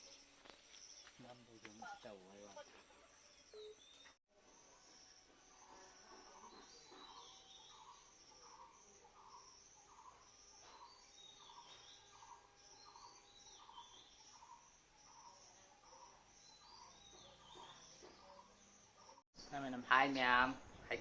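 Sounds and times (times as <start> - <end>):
insects chirping: 0.0 - 21.0.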